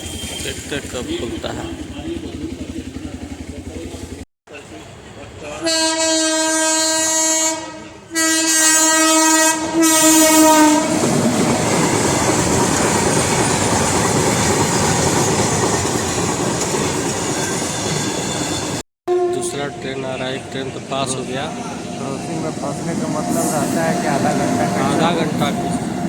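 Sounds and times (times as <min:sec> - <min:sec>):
train rumbling and clattering past: 0:00.0 - 0:18.8, 0:19.4 - 0:26.0
train horn blasts: 0:05.6 - 0:11.1, 0:19.1 - 0:20.6, 0:22.6 - 0:26.0.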